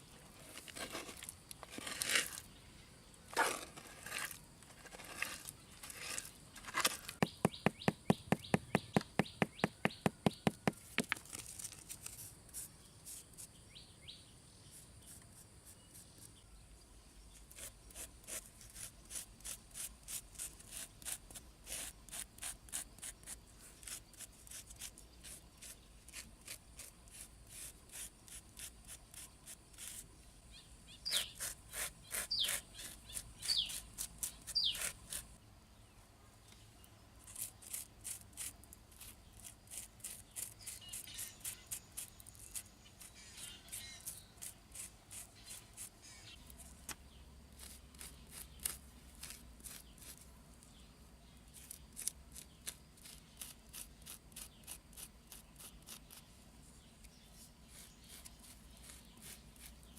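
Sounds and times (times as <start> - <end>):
birds chirping: 5.6 - 10.9, 30.2 - 35.1.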